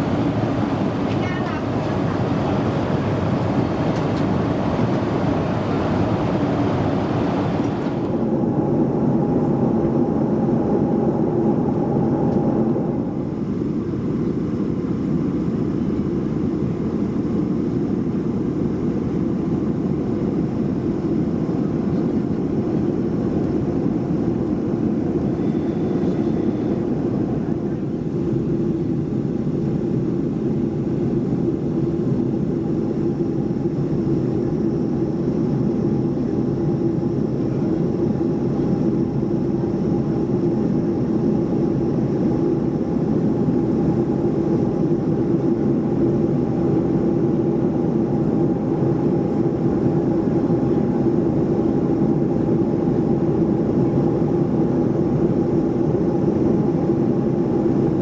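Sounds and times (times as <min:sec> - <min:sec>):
airplane cabin drone: 0:00.0 - 0:58.0.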